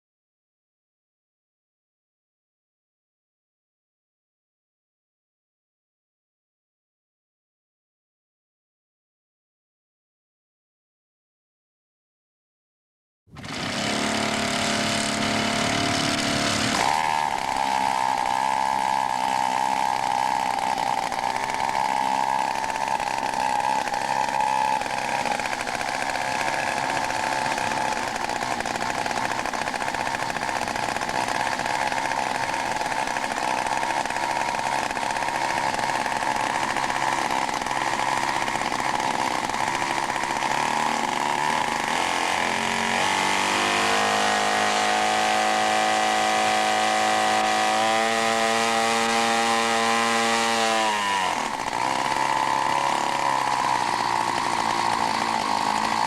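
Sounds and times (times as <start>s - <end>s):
model airplane engine running: 13.4s - 56.0s.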